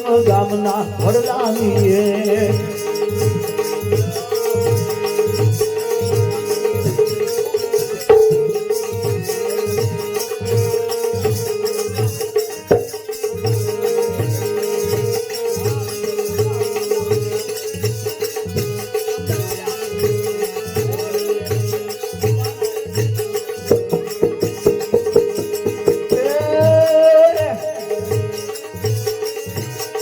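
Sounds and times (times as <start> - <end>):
jingling hand percussion: 0.0 - 30.0
drum beat: 6.3 - 13.8, 22.3 - 28.4.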